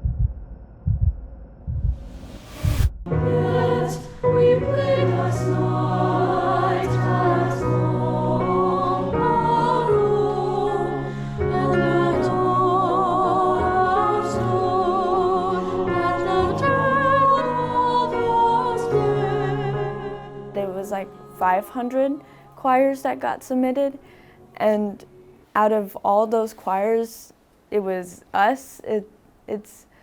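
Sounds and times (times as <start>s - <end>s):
choir singing: 3.1s - 23.4s.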